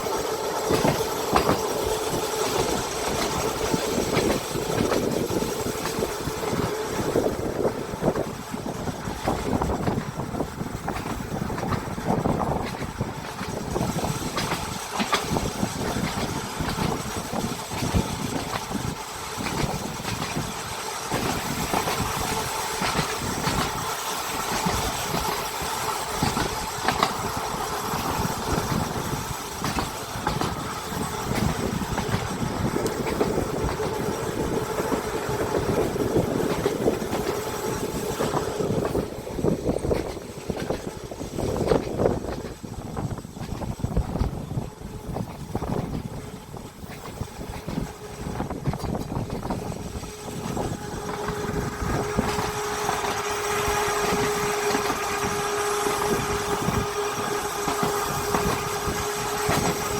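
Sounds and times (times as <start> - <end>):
rattles and clacks: 0.0 - 53.4, 54.0 - 59.9
tram wheels rumbling on rail: 0.0 - 59.9.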